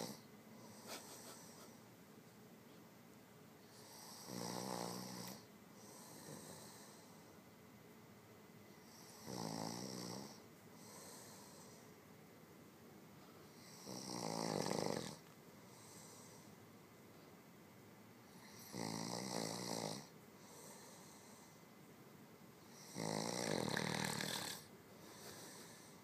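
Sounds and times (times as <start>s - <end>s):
man snoring heavily: 0.0s - 0.8s, 3.7s - 7.0s, 8.9s - 11.8s, 13.6s - 15.2s, 18.3s - 21.4s, 22.7s - 25.9s
soft airy breath: 5.4s - 7.4s, 10.4s - 12.1s, 15.5s - 17.4s, 20.3s - 21.9s, 24.6s - 26.0s.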